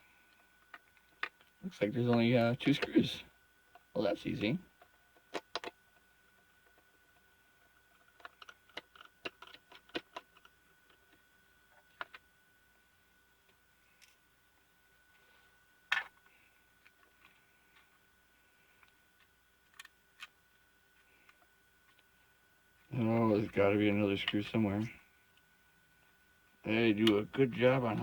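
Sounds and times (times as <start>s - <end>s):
faint steady hum: 0.0s - 28.0s
plastic parts handled: 7.9s - 12.3s.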